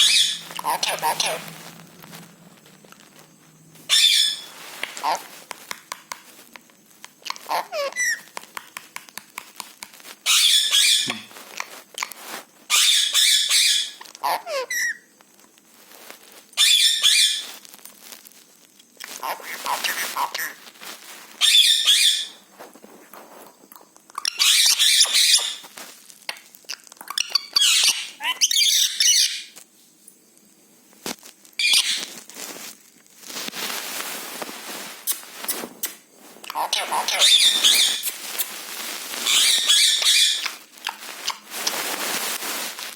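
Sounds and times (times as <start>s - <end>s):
parrot harsh rasping: 0.0s - 1.6s, 3.9s - 5.3s, 7.2s - 8.3s, 10.3s - 11.3s, 19.1s - 20.6s, 35.8s - 38.5s, 39.2s - 41.5s
parrot crunching food: 0.0s - 13.0s, 19.0s - 21.8s, 26.3s - 28.8s, 31.6s - 42.7s.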